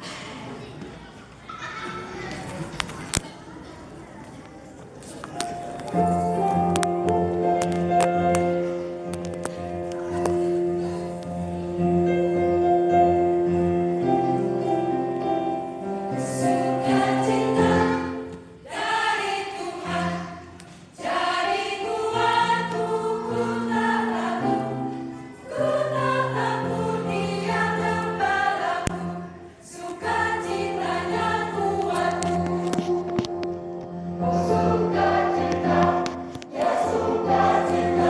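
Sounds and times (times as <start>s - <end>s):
choir singing a hymn: 10.4s - 38.0s.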